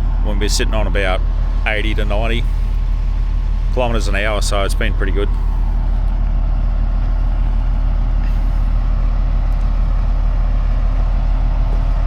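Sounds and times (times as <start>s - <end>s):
road noise: 0.0s - 12.0s
vehicle engine drone: 0.0s - 12.0s.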